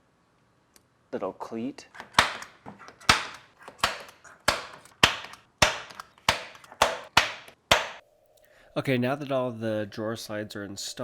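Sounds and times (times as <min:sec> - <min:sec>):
center punch tapping metal: 0:02.0 - 0:08.0.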